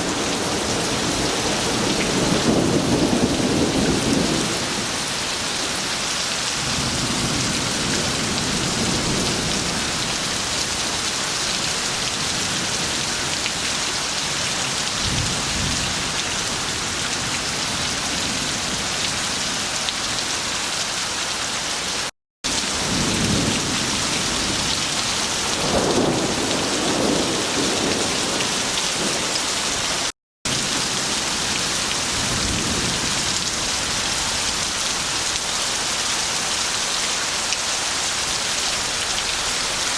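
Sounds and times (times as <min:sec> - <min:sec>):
thunder rumbling: 0:00.0 - 0:05.1, 0:22.5 - 0:34.3
heavy rain pouring: 0:00.0 - 0:39.9.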